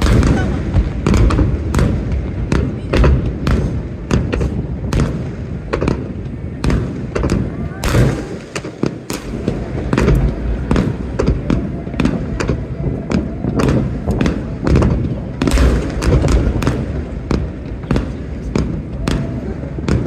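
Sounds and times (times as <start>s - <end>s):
deep fireworks booms: 0.0s - 20.0s
fireworks bangs and crackles: 0.0s - 20.0s.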